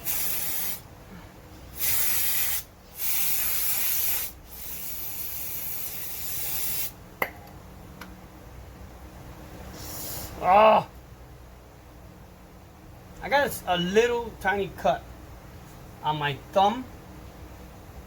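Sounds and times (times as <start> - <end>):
aerosol spray can hissing: 0.0 - 0.8, 1.8 - 6.9.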